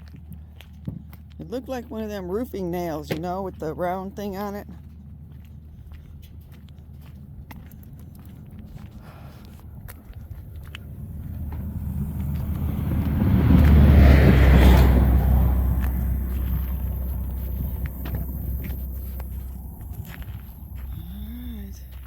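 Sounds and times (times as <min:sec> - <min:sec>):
vehicle driving past: 0:09.5 - 0:22.0.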